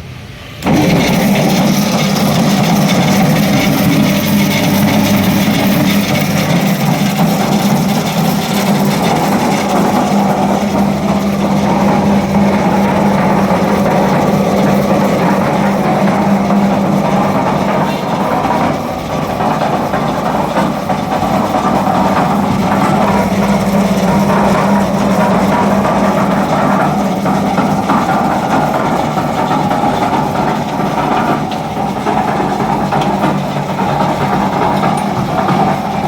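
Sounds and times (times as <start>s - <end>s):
concrete mixer running: 0.0s - 36.0s.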